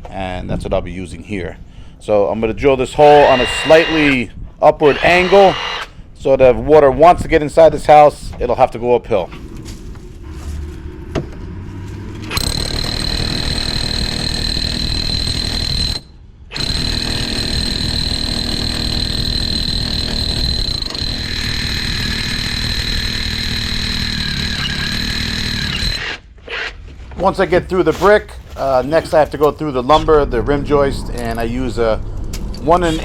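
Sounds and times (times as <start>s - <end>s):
high motor whine: 2.9s - 6.0s, 9.3s - 26.3s
rotary hammer drilling brick: 3.0s - 4.2s, 4.8s - 5.9s, 12.2s - 26.8s.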